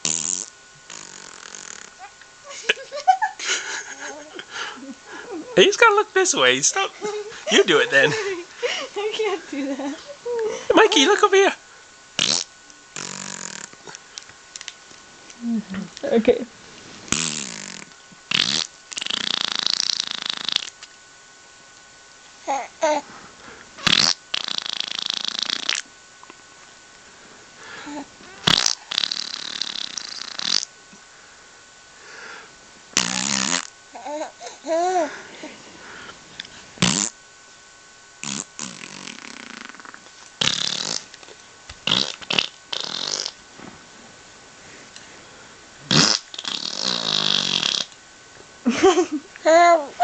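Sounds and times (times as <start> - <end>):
person blowing fake farts: 0.0 - 2.0, 12.2 - 14.0, 17.1 - 20.8, 23.8 - 25.9, 28.4 - 30.7, 33.0 - 33.7, 36.8 - 37.2, 38.2 - 41.1, 41.8 - 43.4, 45.9 - 48.0
baby vocalizing: 22.4 - 23.1, 34.0 - 35.2, 49.4 - 50.0.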